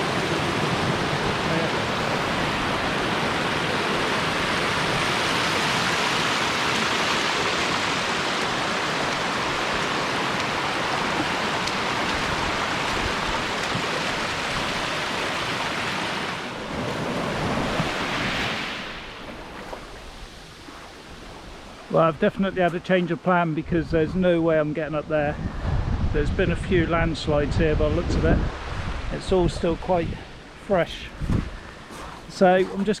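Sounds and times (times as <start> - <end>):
water rushing: 0.0 - 25.1.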